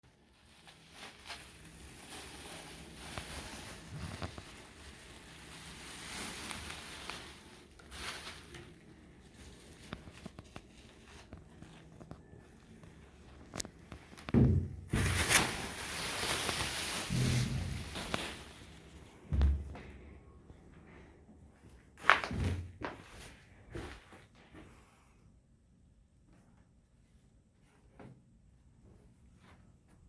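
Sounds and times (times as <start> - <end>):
faint rustling: 0.1 - 14.3, 14.9 - 25.0.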